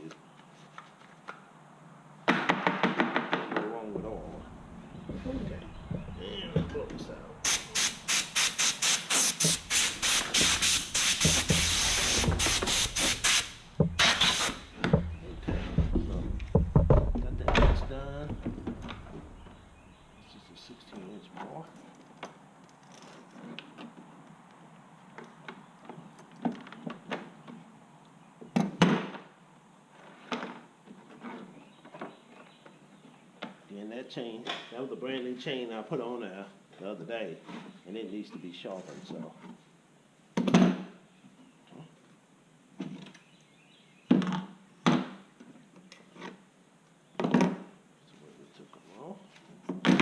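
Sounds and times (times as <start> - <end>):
air blow gun hissing: 7.4 - 14.8
loud knocks: 14.8 - 19.6.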